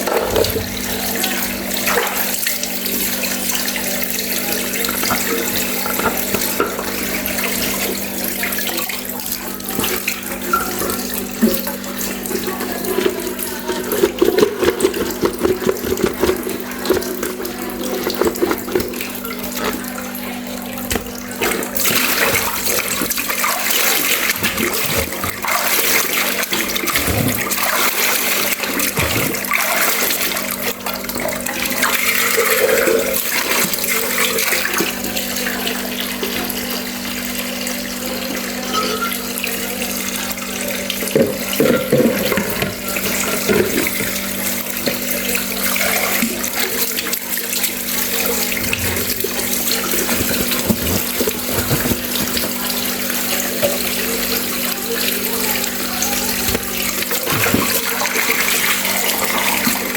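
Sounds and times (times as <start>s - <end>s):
tap water running into sink: 0.0s - 59.9s
dishes knocking: 48.6s - 52.6s.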